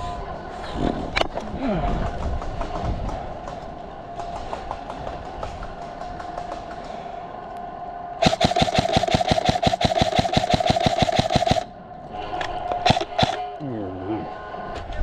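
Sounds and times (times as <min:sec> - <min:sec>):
airsoft gun firing full-auto: 0:08.2 - 0:11.7, 0:12.8 - 0:13.4.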